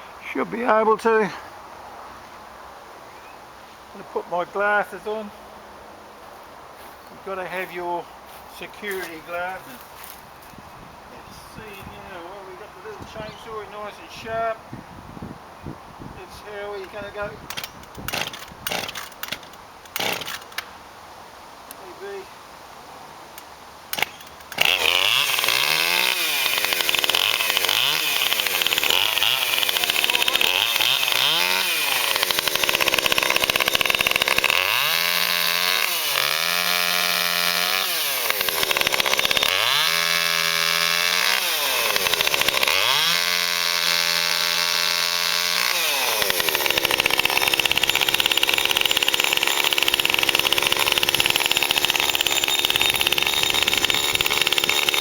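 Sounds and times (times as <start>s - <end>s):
chainsaw revving: 18.1s - 19.0s, 20.0s - 20.3s, 24.0s - 55.0s.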